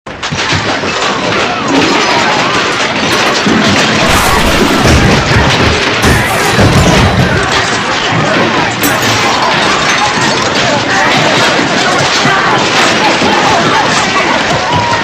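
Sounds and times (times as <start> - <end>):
thumps and crashes: 0.1 - 15.0
heavy low thuds: 4.0 - 7.8.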